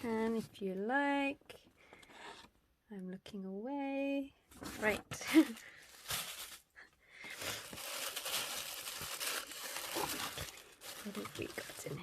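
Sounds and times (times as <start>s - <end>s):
packaging rustling: 4.7s - 12.0s.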